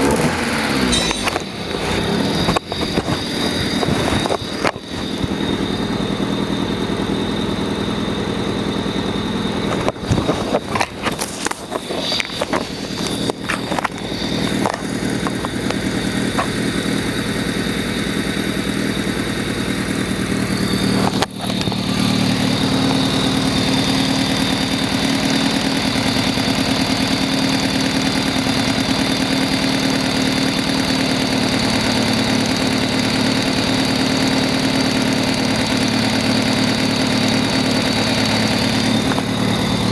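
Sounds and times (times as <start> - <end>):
car engine idling: 0.0 - 39.9
sharp clicks and knocks: 0.9 - 5.0, 21.0 - 21.9.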